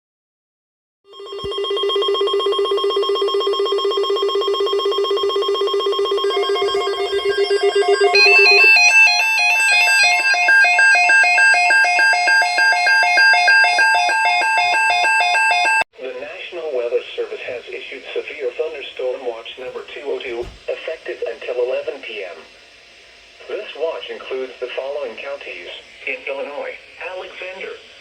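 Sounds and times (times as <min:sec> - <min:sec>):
two-pitch alternating alert tone: 0:01.2 - 0:15.8.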